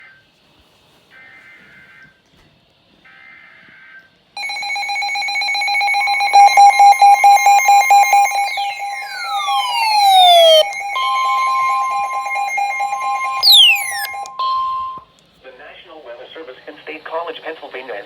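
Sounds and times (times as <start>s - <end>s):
downward sweeping whistles: 4.4s - 15.0s
rapid beeping: 4.4s - 15.0s
two-tone attention signal: 4.4s - 15.0s
shrill multi-tone alarm: 4.4s - 15.1s.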